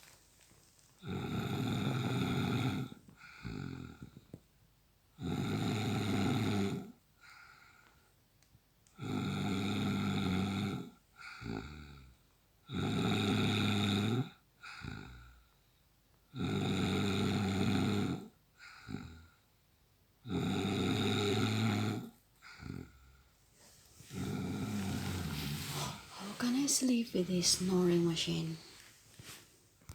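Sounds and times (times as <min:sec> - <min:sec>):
soft breaths: 0:00.0 - 0:04.5, 0:07.1 - 0:08.2, 0:22.4 - 0:29.9
man snoring heavily: 0:01.0 - 0:04.1, 0:05.2 - 0:07.6, 0:09.0 - 0:12.1, 0:12.7 - 0:15.4, 0:16.3 - 0:19.3, 0:20.3 - 0:23.0, 0:24.0 - 0:26.4.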